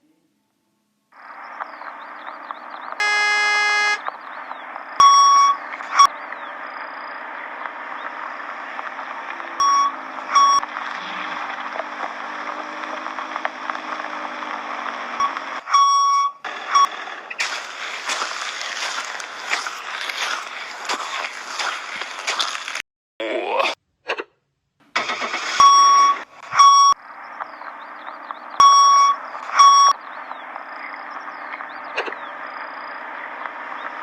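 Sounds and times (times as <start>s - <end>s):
crackling clicking noise: 1.4s - 3.0s, 7.6s - 9.5s, 10.1s - 15.6s, 27.3s - 27.6s, 28.2s - 28.5s, 29.3s - 32.2s, 33.4s - 34.0s
short beeps: 1.5s - 4.2s, 4.9s - 6.1s, 9.6s - 10.7s, 15.2s - 16.9s, 25.6s - 27.0s, 28.6s - 30.0s
buzzer tone: 3.0s - 4.1s, 5.0s - 6.1s, 9.6s - 11.4s, 15.2s - 16.9s, 28.6s - 30.0s.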